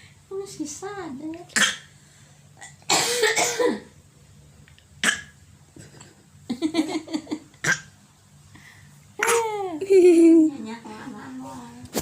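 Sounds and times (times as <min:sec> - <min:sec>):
child coughing: 0:01.6 - 0:01.9, 0:02.8 - 0:03.9.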